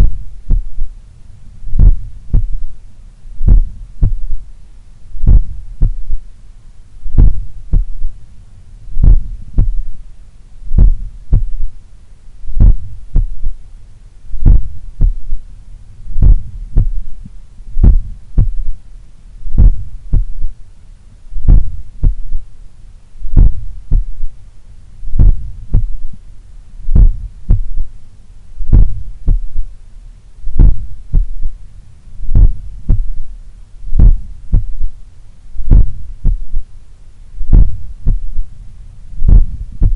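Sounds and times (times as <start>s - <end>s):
heartbeat through stethoscope: 0.0s - 0.9s, 1.7s - 2.8s, 3.4s - 4.4s, 5.2s - 6.2s, 7.1s - 8.2s, 9.0s - 10.0s, 10.7s - 11.7s, 12.5s - 13.6s, 14.4s - 15.4s, 16.1s - 18.8s, 19.5s - 20.6s, 21.4s - 22.4s, 23.3s - 24.3s, 25.1s - 26.2s, 26.9s - 27.9s, 28.6s - 29.7s, 30.5s - 31.6s, 32.3s - 33.3s, 33.9s - 35.0s, 35.6s - 36.7s, 37.4s - 38.5s, 39.2s - 39.9s
low hum: 0.0s - 39.9s.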